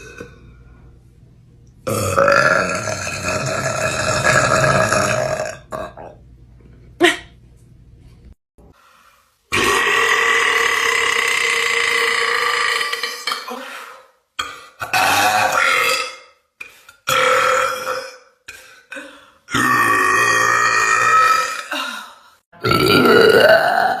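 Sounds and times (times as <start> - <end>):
woman belching loudly: 1.9 - 6.2, 9.5 - 13.6, 14.8 - 16.2, 19.5 - 21.8, 22.6 - 24.0.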